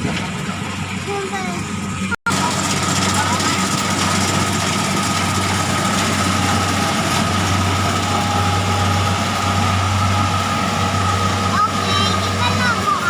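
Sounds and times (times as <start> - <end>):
harvesting machine engine running: 0.0 - 13.0.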